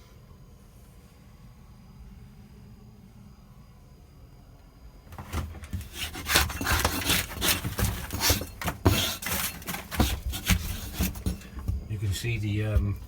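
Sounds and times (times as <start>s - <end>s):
scraping rotten plywood: 5.1s - 13.0s.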